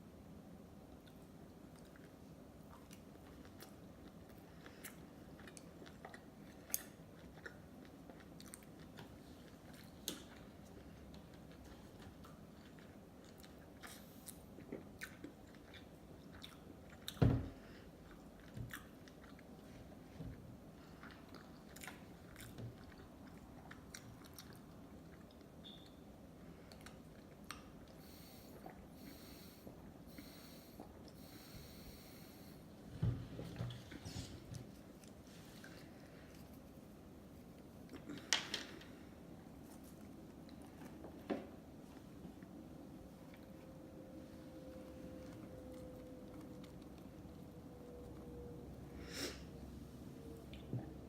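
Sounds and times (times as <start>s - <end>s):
chewing with wet mouth clicks: 0.9s - 17.2s, 18.0s - 20.0s, 20.8s - 29.0s, 45.2s - 48.4s.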